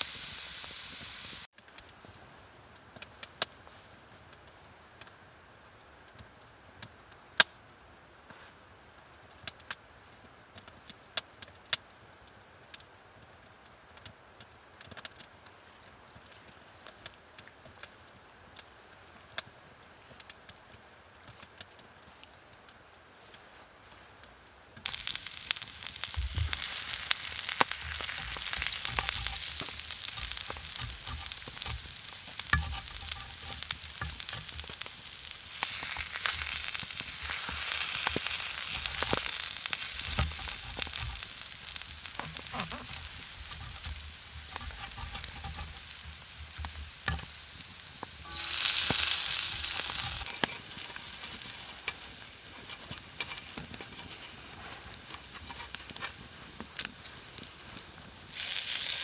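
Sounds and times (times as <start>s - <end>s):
food sizzling in a pan: 0.0s - 1.5s, 24.8s - 59.0s
crackles and pops: 0.0s - 59.0s.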